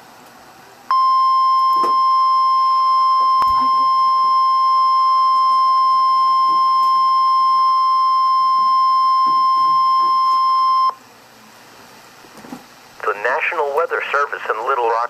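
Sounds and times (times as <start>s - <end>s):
high steady alert beep: 0.9s - 11.0s.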